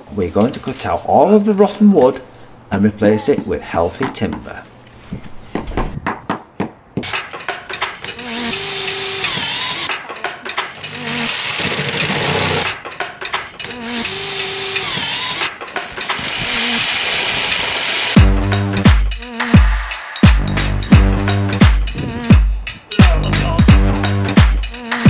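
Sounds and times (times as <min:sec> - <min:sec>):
power tool on timber boards: 0:08.1 - 0:10.0, 0:10.8 - 0:12.8, 0:13.6 - 0:18.2.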